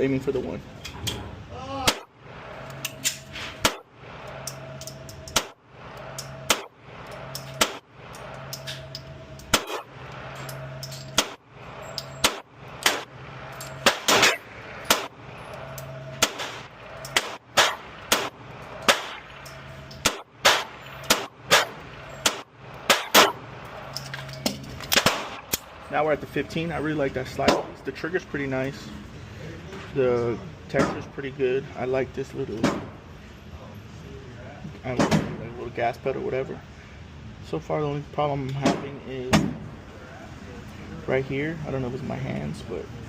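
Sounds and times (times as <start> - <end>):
pistol shots: 3.6 - 3.9, 5.3 - 5.6, 6.4 - 6.8, 7.5 - 7.9, 9.5 - 9.9, 11.1 - 11.4, 12.2 - 13.1, 13.8 - 15.2, 16.2 - 19.4, 20.0 - 23.4, 24.9 - 25.6.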